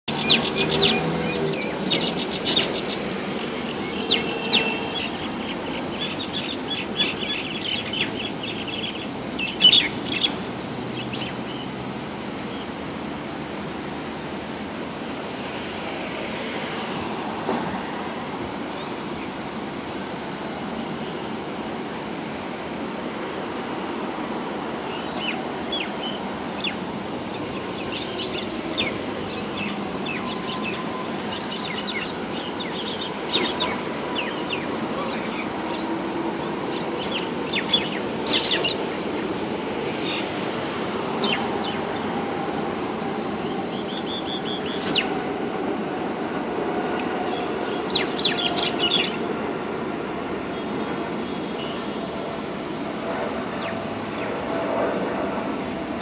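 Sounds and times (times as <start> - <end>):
birds chirping and calling: 0.1 - 10.4, 25.2 - 36.0, 36.7 - 38.8, 43.7 - 45.2, 47.9 - 49.2.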